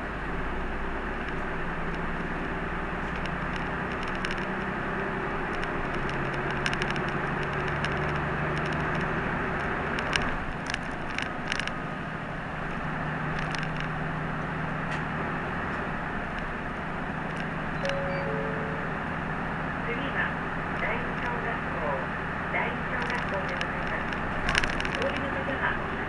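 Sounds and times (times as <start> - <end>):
bus engine running: 0.0 - 26.0
road noise: 0.0 - 26.0.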